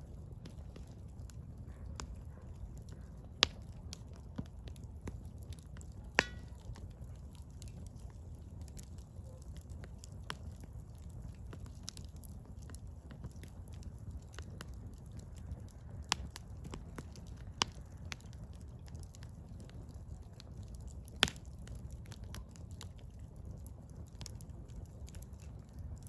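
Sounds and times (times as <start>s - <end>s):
firewood burning with crackles: 0.0s - 26.0s
sharp pops: 6.2s - 6.6s.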